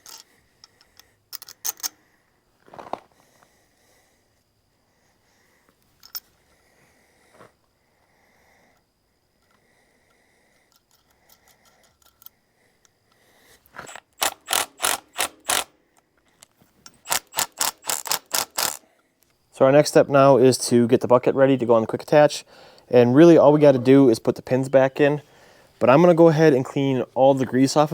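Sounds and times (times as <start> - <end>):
ratchet wrench clicking: 0.0 - 2.0, 13.8 - 15.7, 16.8 - 18.8.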